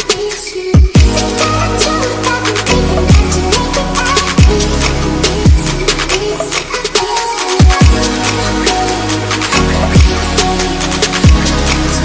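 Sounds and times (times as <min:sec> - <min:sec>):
electronic dance music: 0:00.0 - 0:12.0.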